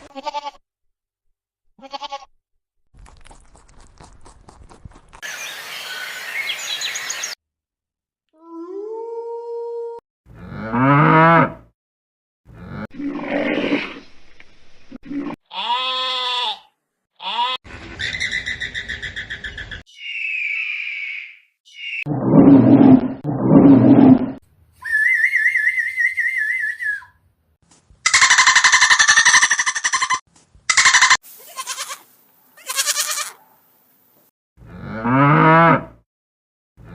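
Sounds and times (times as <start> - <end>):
cow mooing: 10.4 - 11.6, 34.6 - 36.0
rising call: 24.8 - 27.1
warbling whistle: 24.8 - 27.1
rough animal calls: 28.1 - 31.9.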